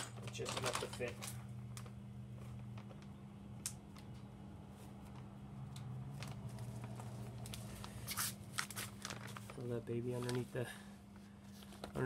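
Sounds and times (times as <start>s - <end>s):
engine parts clicking in a bag: 0.0s - 3.2s, 6.1s - 10.6s
steady low hum: 0.0s - 12.0s.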